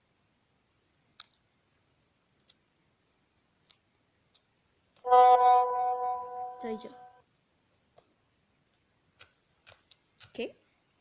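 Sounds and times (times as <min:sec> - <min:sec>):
faint sharp clicks: 0:01.1 - 0:01.4
loud steady tone: 0:05.1 - 0:07.1.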